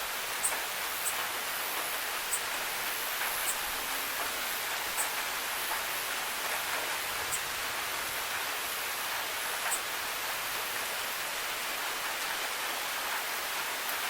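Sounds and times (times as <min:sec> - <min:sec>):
steady rain: 0:00.0 - 0:14.0
sharp high ticks: 0:00.4 - 0:02.6, 0:03.2 - 0:07.5, 0:09.6 - 0:09.9.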